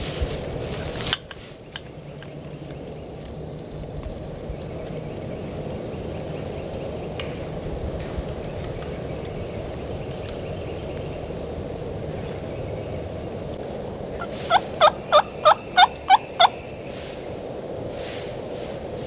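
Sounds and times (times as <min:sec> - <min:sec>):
turkey yelping: 0:14.2 - 0:16.7.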